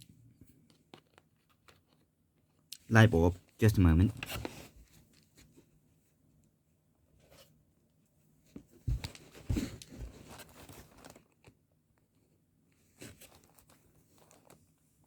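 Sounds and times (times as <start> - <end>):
packaging crinkling and rustling: 9.0 - 11.6, 13.0 - 14.6.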